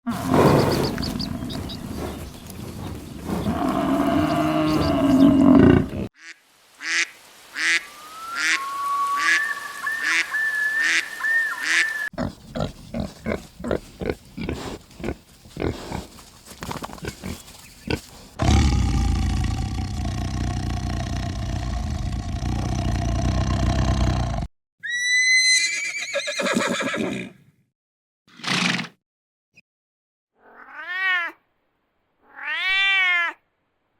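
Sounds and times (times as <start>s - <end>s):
animal calls: 0.1s - 6.3s, 7.6s - 12.1s.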